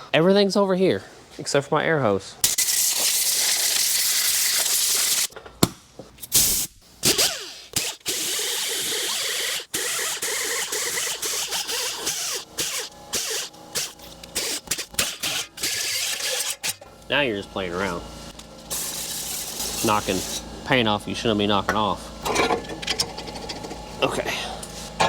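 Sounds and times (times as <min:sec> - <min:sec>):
compressed air tool hissing: 0:06.3 - 0:16.6.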